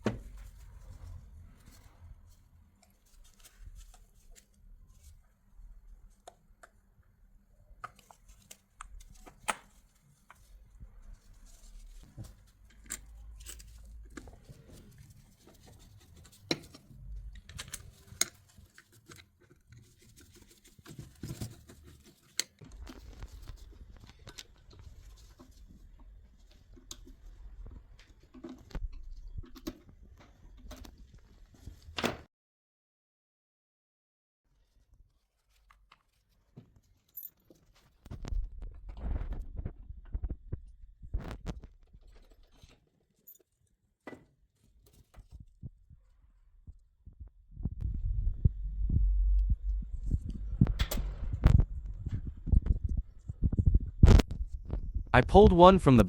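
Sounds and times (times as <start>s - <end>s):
low steady rumble: 47.6s - 55.4s.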